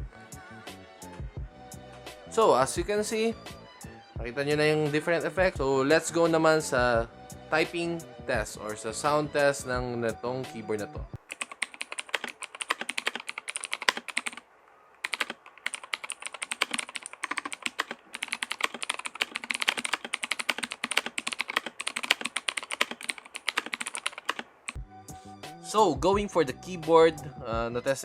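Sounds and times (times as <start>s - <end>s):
mechanical keyboard typing: 11.2s - 14.4s, 15.0s - 24.8s.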